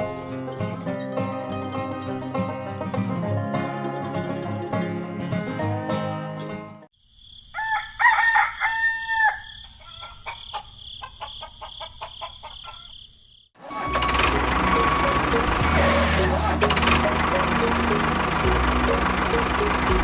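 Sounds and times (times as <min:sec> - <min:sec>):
banjo music sting: 0:00.0 - 0:06.8, 0:13.6 - 0:20.0
rooster crowing: 0:07.5 - 0:13.0
chicken clucks and chirps: 0:09.1 - 0:13.1
high-pitched chirring: 0:13.7 - 0:20.0
loud noisy machine running: 0:13.7 - 0:20.0.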